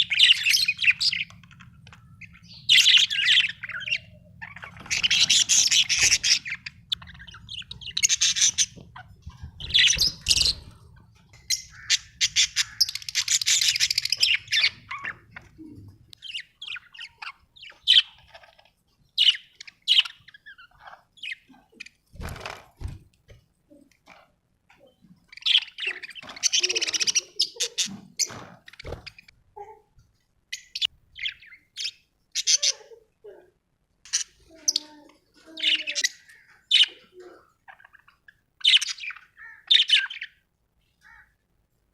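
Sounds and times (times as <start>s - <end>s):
budgerigars chattering and chirping: 0.0s - 15.6s, 16.2s - 22.0s, 25.3s - 29.3s, 35.5s - 40.4s.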